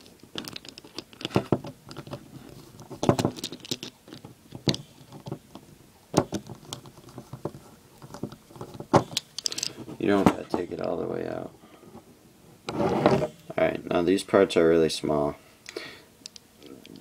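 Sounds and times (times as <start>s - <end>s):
small metal parts handled: 0.0s - 5.6s, 6.2s - 11.0s.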